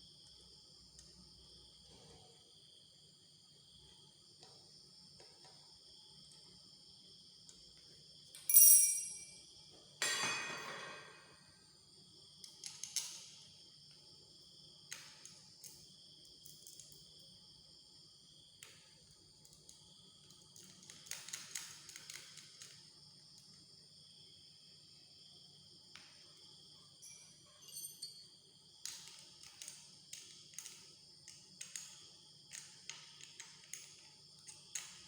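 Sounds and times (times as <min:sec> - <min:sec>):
crickets chirping: 0:00.0 - 0:35.0
metal objects pinging and clanging: 0:10.0 - 0:11.2.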